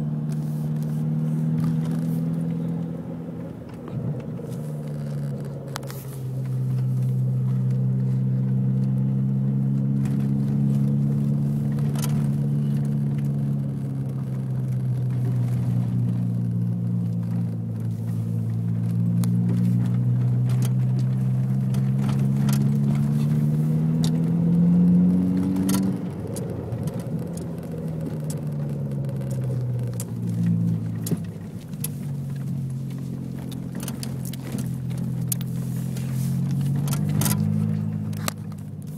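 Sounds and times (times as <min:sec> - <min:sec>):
car engine under load: 0:00.0 - 0:38.9
faint clicks and rattles: 0:10.0 - 0:24.2, 0:25.3 - 0:38.9.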